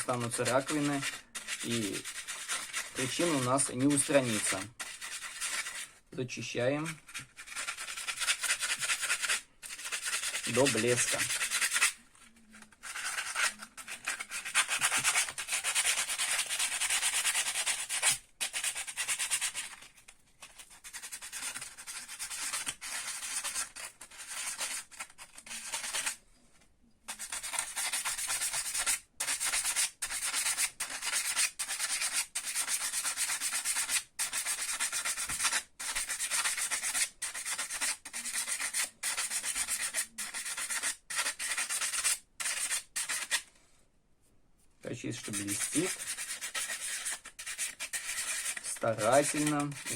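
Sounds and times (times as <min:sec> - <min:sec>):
sandpaper scraping on steel: 0:00.0 - 0:05.9, 0:06.8 - 0:12.0, 0:12.8 - 0:19.8, 0:27.2 - 0:43.5, 0:45.0 - 0:49.9.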